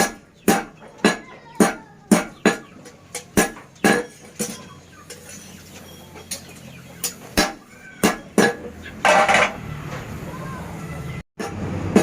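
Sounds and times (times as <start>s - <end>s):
hammer striking iron: 0.0s - 4.6s, 7.0s - 9.6s.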